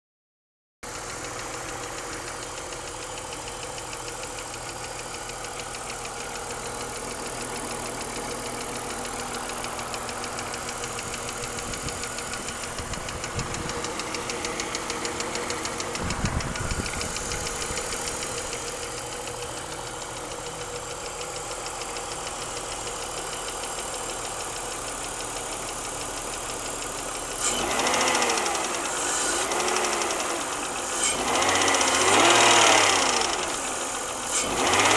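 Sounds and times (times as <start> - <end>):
car engine running: 0.8 - 34.9
metallic engine ticking: 1.0 - 24.4.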